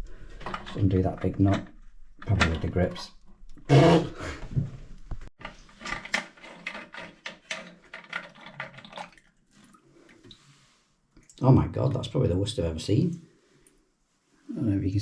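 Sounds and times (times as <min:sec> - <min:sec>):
small clicks of plastic parts: 0:05.4 - 0:09.0
water dripping and splashing: 0:07.6 - 0:10.5.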